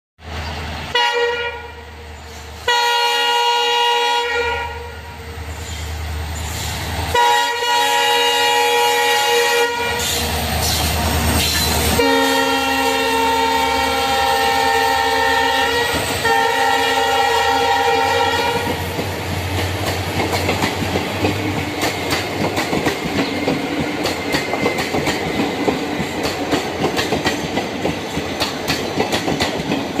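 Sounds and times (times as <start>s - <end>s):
train horn blasts: 0.9s - 2.0s, 2.6s - 5.4s, 7.1s - 10.2s, 11.9s - 18.8s
train wheels clickety-clack: 9.9s - 12.5s, 18.3s - 30.0s.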